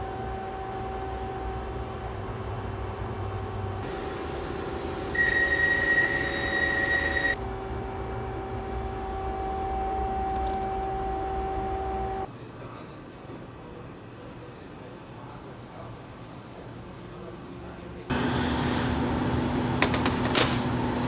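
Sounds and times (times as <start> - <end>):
loud hiss: 3.8 - 7.4
machine whine: 3.8 - 12.3
shrill high whistle: 5.1 - 7.4.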